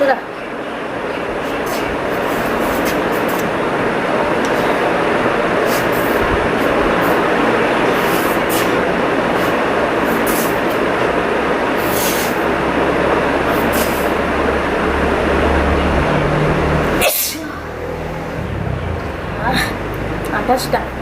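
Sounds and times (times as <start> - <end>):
loud rushing noise: 0.5 - 21.0
short hissy sounds: 8.0 - 8.8, 11.8 - 12.4.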